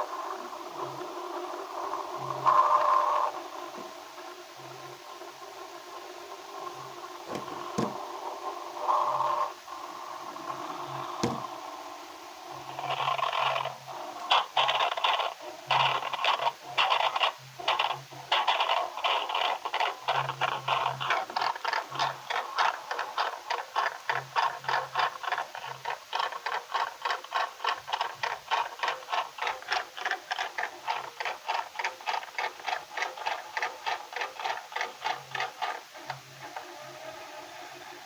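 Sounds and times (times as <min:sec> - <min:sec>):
phone knocking against drum: 0:07.3 - 0:08.0, 0:11.2 - 0:11.5.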